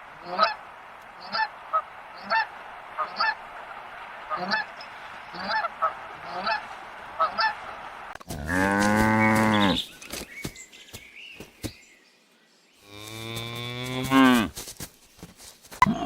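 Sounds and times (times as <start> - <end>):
goose honking: 0.2 - 0.6, 1.2 - 7.7
cow mooing: 8.4 - 9.8.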